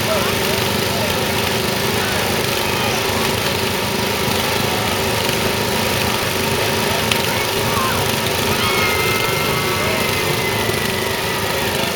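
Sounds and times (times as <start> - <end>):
lawn mower engines running: 0.0 - 11.9.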